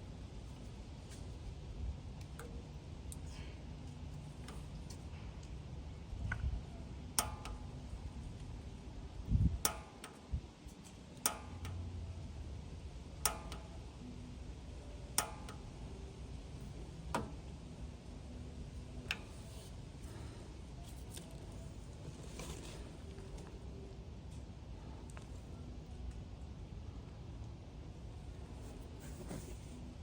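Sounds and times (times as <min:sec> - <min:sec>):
igniter clicking: 0:07.1 - 0:07.6, 0:09.6 - 0:10.2, 0:11.2 - 0:11.8, 0:13.2 - 0:13.7, 0:15.1 - 0:15.7.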